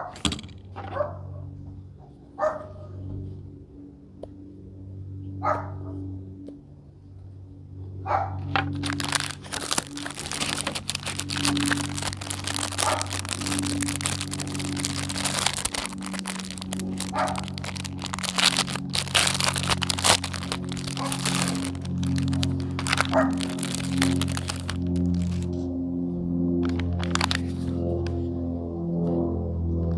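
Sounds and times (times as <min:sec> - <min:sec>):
plastic packaging crinkling: 0:08.5 - 0:25.6, 0:26.6 - 0:27.8.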